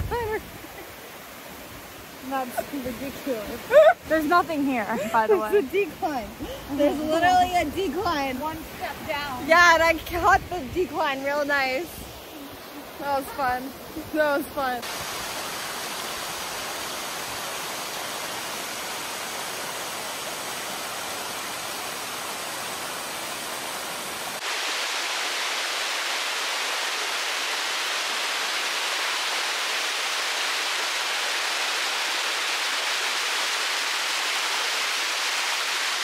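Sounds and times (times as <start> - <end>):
waterfall rushing: 0.0 - 36.0.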